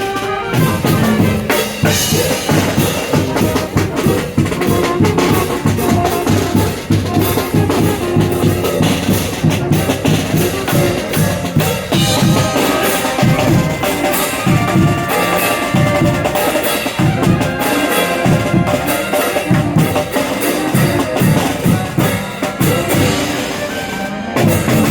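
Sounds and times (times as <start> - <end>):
drums and percussion: 0.0 - 24.9
held melody notes: 0.0 - 24.9.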